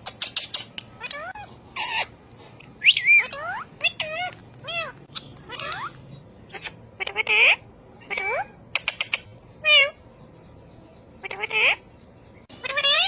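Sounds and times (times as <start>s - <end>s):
parrot chattering: 0.0s - 2.2s, 2.8s - 10.0s, 11.2s - 11.8s, 12.6s - 13.0s.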